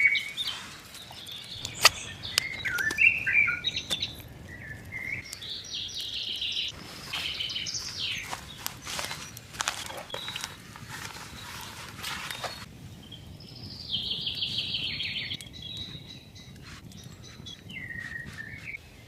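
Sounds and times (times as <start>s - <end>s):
birds chirping and warbling: 0.0s - 19.0s
sharp clicks or snaps: 1.3s - 3.2s.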